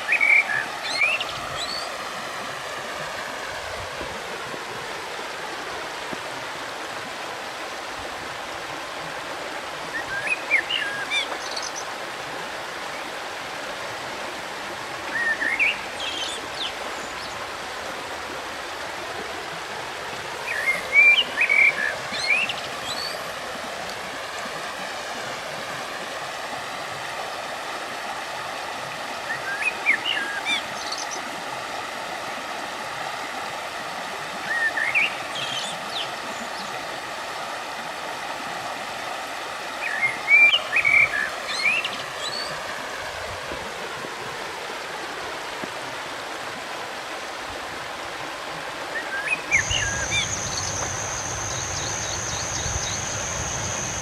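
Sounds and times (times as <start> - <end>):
river water flowing: 0.0 - 54.0
small bird chirping: 49.6 - 54.0.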